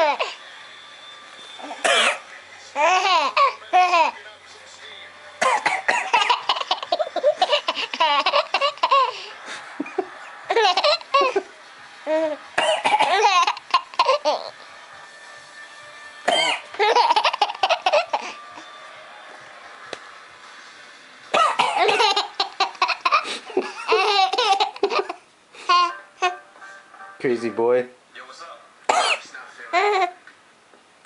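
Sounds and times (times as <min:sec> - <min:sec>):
baby laughing: 0:00.0 - 0:00.4, 0:02.8 - 0:04.2, 0:06.0 - 0:09.3, 0:10.0 - 0:11.4, 0:12.1 - 0:12.4, 0:13.0 - 0:14.6, 0:16.8 - 0:18.3, 0:21.8 - 0:26.4, 0:29.7 - 0:30.2
adult coughing: 0:01.7 - 0:02.3, 0:05.4 - 0:08.0, 0:12.6 - 0:13.3, 0:16.3 - 0:16.7, 0:21.4 - 0:22.2, 0:28.9 - 0:29.3.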